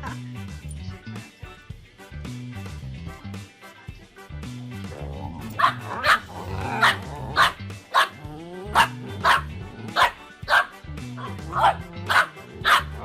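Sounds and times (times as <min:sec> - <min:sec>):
dog barking: 0:00.0 - 0:00.2, 0:05.5 - 0:13.0
background music: 0:00.0 - 0:13.0.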